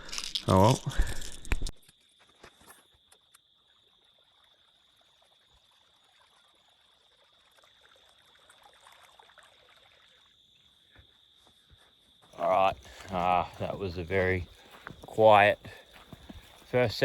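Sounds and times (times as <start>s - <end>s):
faint outdoor ambience: 9.3s - 17.0s.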